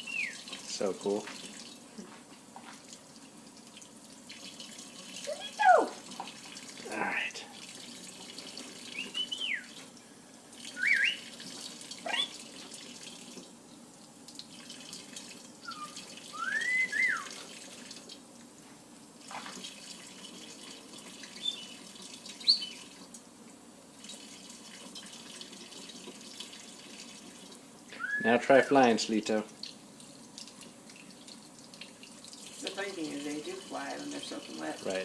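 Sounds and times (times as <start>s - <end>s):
whistled glides: 15.7s - 17.3s, 28.0s - 28.4s.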